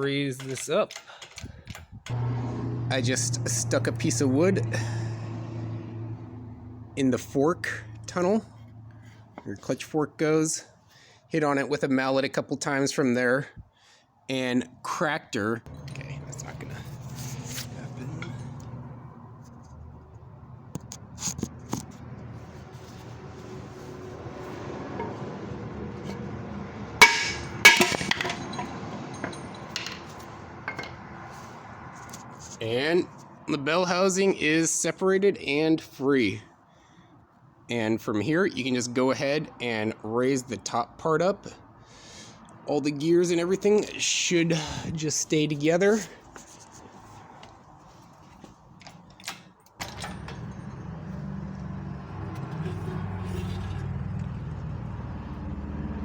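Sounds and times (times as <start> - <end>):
low motor drone: 2.1 - 9.4, 15.7 - 21.2
metal casting being struck: 27.0 - 28.7.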